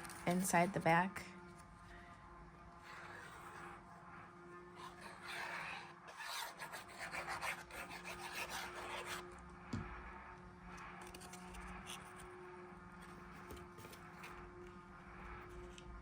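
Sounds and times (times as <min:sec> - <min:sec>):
cardstock rustling and rubbing: 0:02.8 - 0:03.8, 0:04.8 - 0:09.2.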